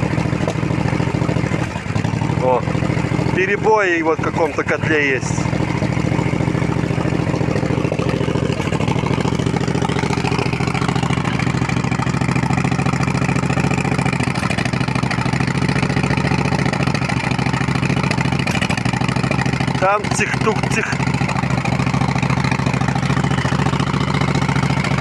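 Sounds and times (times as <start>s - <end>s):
motorcycle engine idling: 0.0s - 25.0s.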